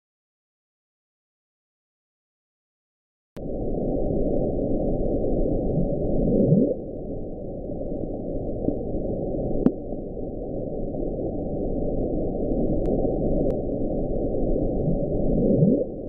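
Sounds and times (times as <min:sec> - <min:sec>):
low underwater rumbling: 0:03.4 - 0:16.0.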